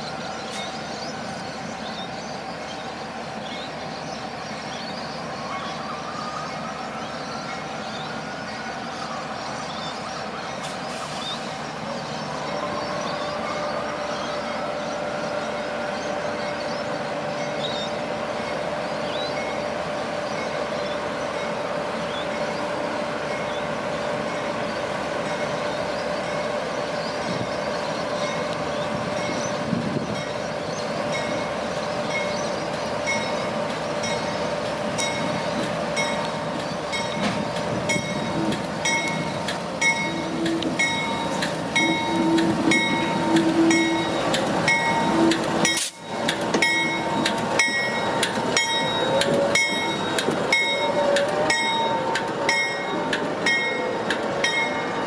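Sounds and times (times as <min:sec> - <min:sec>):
train engine drone: 0:00.0 - 0:55.0
wheels clicking over rail joints: 0:35.0 - 0:54.8.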